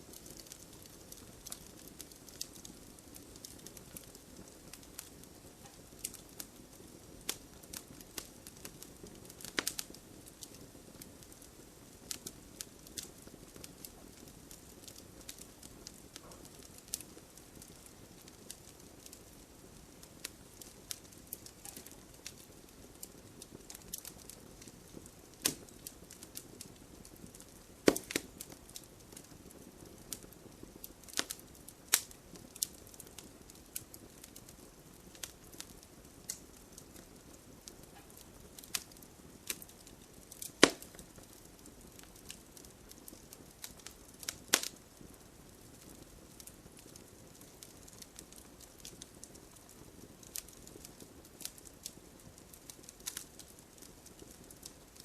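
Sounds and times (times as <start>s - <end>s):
campfire logs crackling: 0.0s - 55.0s
low rush of flame: 0.0s - 55.0s
sharp pops and snaps: 9.4s - 10.6s, 20.6s - 22.4s, 23.1s - 26.7s, 27.4s - 28.8s, 31.0s - 33.9s, 37.7s - 41.4s, 43.6s - 44.8s.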